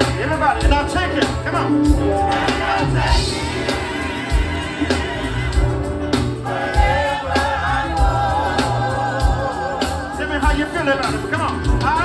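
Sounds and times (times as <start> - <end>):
band with bass and drums: 0.0 - 12.0
choir singing gospel: 0.0 - 12.0.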